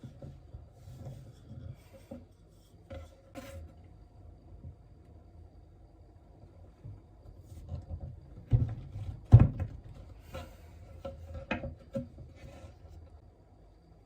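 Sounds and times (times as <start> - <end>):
knocks and clunks of objects: 0.0 - 3.8, 6.7 - 13.1.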